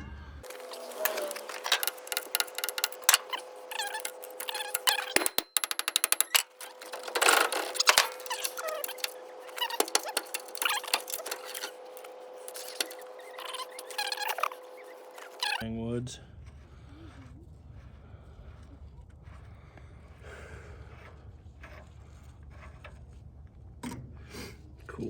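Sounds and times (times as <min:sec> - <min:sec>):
hand tools knocking on metal: 0:00.4 - 0:14.5
ratchet clicks: 0:00.5 - 0:15.6.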